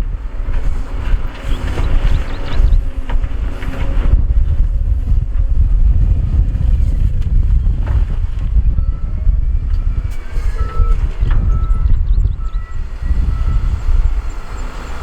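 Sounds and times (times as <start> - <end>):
heavy diesel machinery rumbling: 0.0 - 15.0
wind buffeting microphone: 0.0 - 15.0
short beeps: 10.5 - 14.0.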